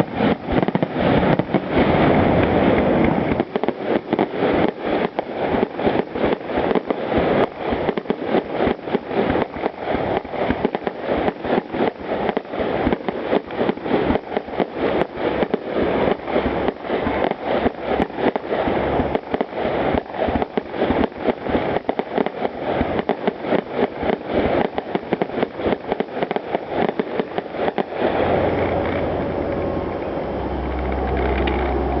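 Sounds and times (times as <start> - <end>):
fireworks shell bursts: 0.0 - 29.1
steady din: 27.8 - 32.0.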